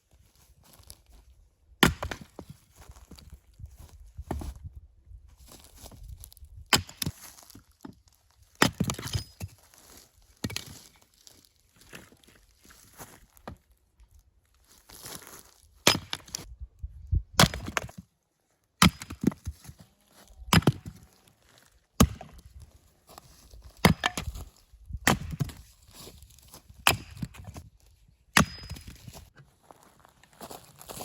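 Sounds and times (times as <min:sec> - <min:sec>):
axe chopping firewood: 0:01.8 - 0:02.5, 0:06.7 - 0:07.6, 0:08.5 - 0:09.5, 0:15.8 - 0:16.4, 0:17.4 - 0:18.0, 0:18.8 - 0:19.7, 0:20.5 - 0:21.0, 0:22.0 - 0:22.5, 0:23.8 - 0:25.6, 0:26.7 - 0:27.6, 0:28.3 - 0:29.1.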